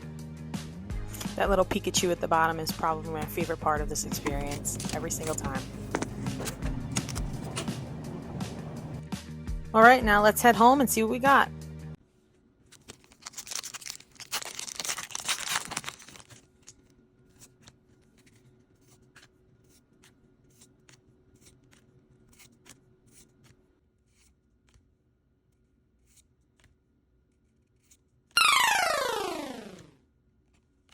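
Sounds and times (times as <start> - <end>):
clicks and rustles of handling: 3.2 - 9.0, 12.6 - 24.9
foil wrapper tearing: 12.8 - 16.9.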